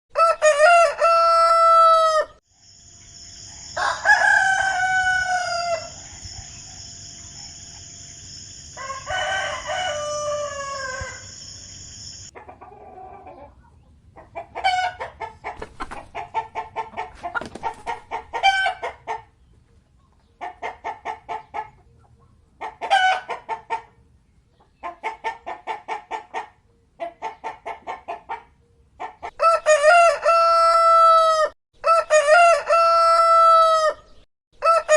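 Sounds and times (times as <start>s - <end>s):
rooster crowing: 0.1s - 2.4s, 3.4s - 7.7s, 8.6s - 12.3s, 29.4s - 34.9s
chickens clucking rapidly: 12.3s - 30.5s.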